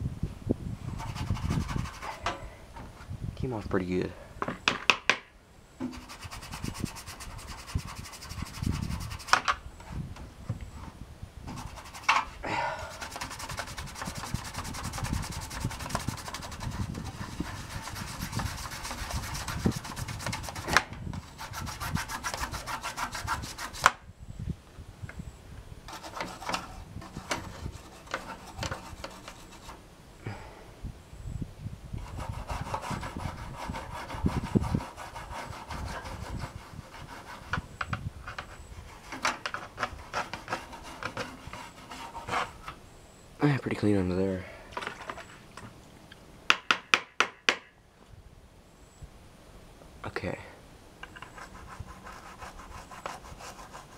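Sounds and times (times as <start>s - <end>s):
sharp knocks: 46.5s - 47.7s.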